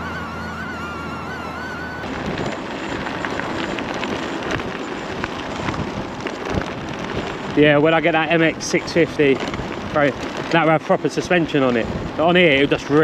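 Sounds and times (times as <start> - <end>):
electric motor whining: 0.0 - 8.3
crackles and clicks: 0.0 - 13.0
rolling road noise: 0.0 - 13.0
wind rush on microphone: 0.0 - 13.0.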